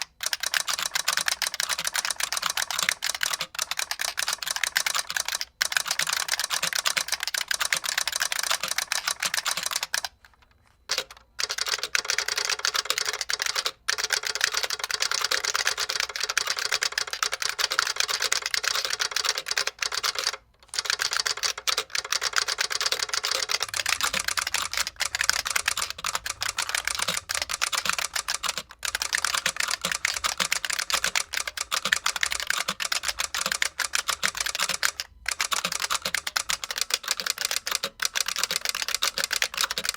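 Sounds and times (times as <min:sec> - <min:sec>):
fast typing on clicky keyboard: 0:00.0 - 0:10.2, 0:10.8 - 0:39.9.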